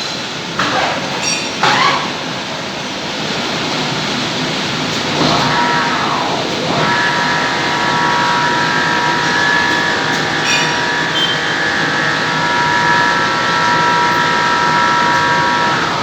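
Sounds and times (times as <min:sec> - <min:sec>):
metal lathe running: 0:04.6 - 0:16.0
steady high whine: 0:04.8 - 0:16.0.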